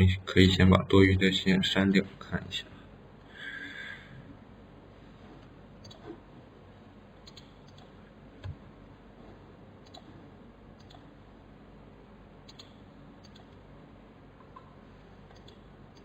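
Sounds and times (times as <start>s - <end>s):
computer mouse clicking: 5.8s - 6.1s, 7.2s - 8.6s, 9.8s - 10.2s, 10.8s - 11.1s, 12.4s - 13.6s, 15.3s - 16.0s.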